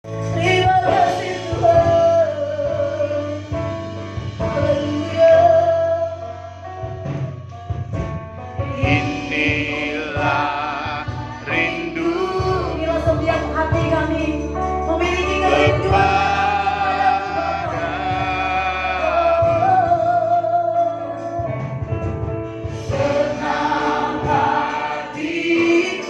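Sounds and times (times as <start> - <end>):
instrumental accompaniment with beat: 0.1 - 26.0
voices singing with vibrato: 8.7 - 13.4, 15.0 - 20.6, 22.9 - 26.0.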